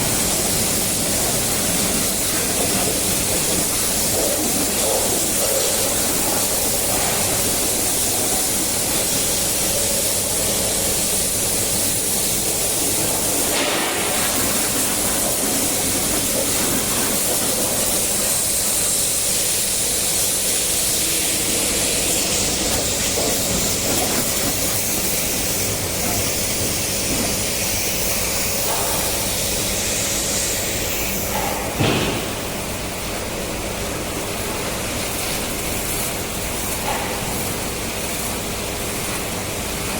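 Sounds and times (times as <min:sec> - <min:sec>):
water jet spraying: 0:00.0 - 0:39.9
brief knock: 0:31.4 - 0:32.4.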